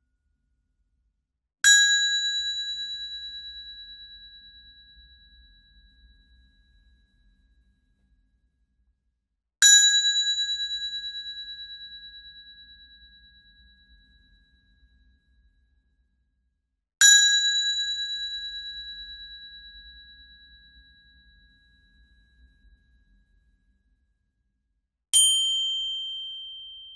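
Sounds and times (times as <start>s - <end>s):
high-pitched bell ding: 25.2s - 26.9s.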